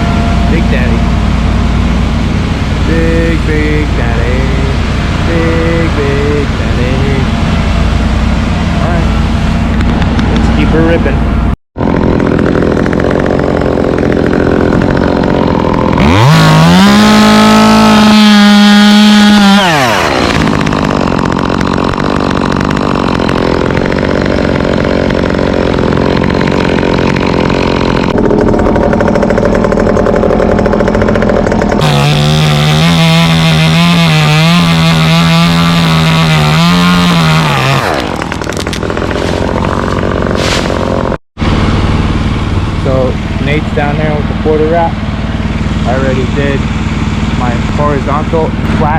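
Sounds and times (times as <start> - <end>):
chainsaw revving and cutting wood: 0.0 - 48.9.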